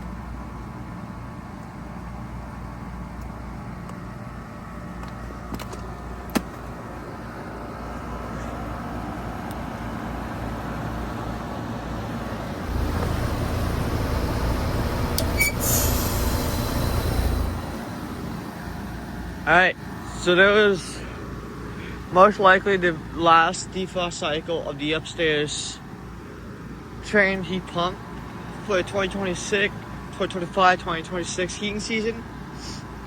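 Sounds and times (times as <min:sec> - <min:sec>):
heat pump unit running: 0:06.8 - 0:20.4
heavy low rumble: 0:12.6 - 0:19.1
brief hiss: 0:12.7 - 0:18.4.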